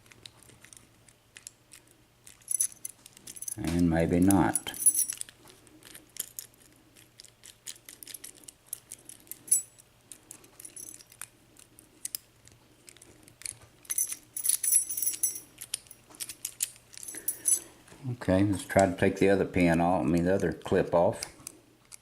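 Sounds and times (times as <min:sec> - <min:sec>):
lock and key metallic clicks: 0:00.0 - 0:17.7
metal jingling: 0:02.4 - 0:05.2, 0:13.9 - 0:16.4, 0:17.0 - 0:17.7.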